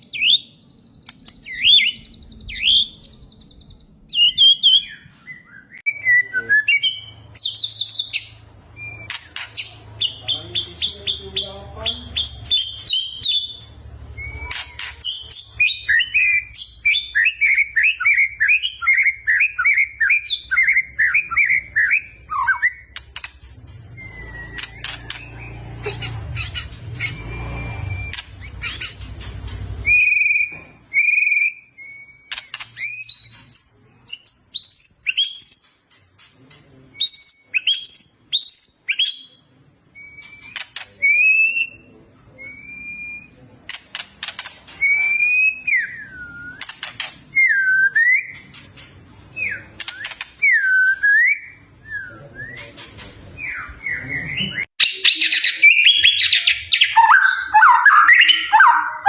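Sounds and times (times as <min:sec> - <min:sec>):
songbird whistling: 0:00.0 - 0:23.0, 0:23.9 - 0:29.0, 0:29.8 - 0:35.7, 0:40.0 - 0:43.4, 0:44.8 - 0:46.7, 0:49.4 - 0:52.8, 0:53.4 - 0:59.0
sharp clicks: 0:01.0 - 0:02.2, 0:09.0 - 0:09.8, 0:22.9 - 0:23.7, 0:24.5 - 0:25.4, 0:28.1 - 0:29.8, 0:32.3 - 0:33.6, 0:40.2 - 0:41.0, 0:43.7 - 0:45.2, 0:46.5 - 0:47.3, 0:49.8 - 0:50.4.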